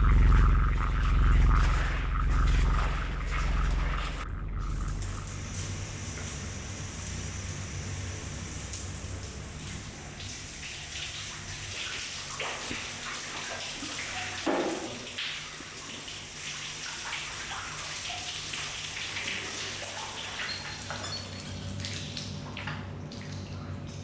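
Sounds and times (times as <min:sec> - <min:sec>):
water running and splattering: 0:00.0 - 0:24.0.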